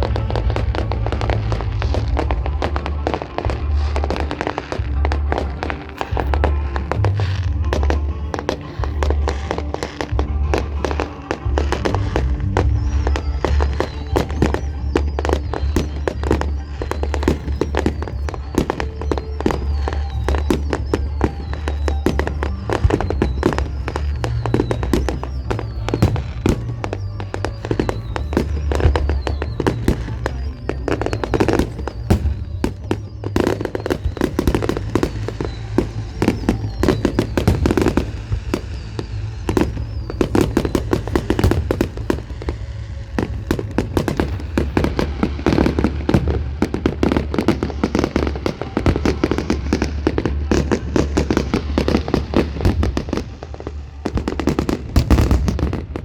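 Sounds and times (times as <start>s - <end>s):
fireworks banging and crackling: 0.0s - 56.0s.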